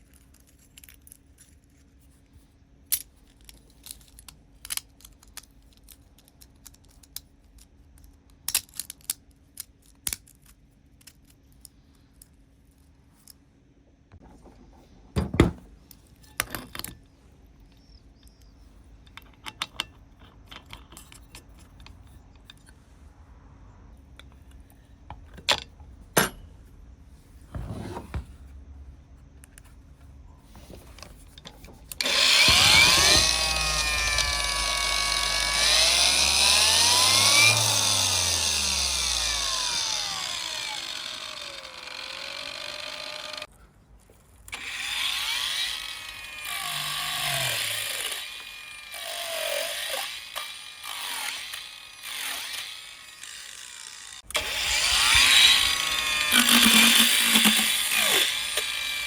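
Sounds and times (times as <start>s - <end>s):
power tool motor running: 32.0s - 43.5s, 44.5s - 59.0s.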